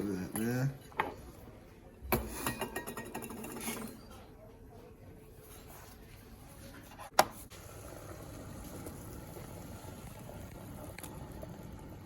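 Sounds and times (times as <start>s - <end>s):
water bubbling at a boil: 7.6s - 12.0s.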